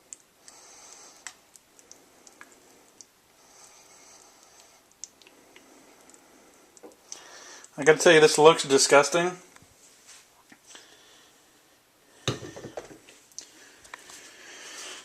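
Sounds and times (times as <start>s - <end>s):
soft hiss: 0.0s - 15.0s
faint clicks and taps: 0.1s - 7.7s.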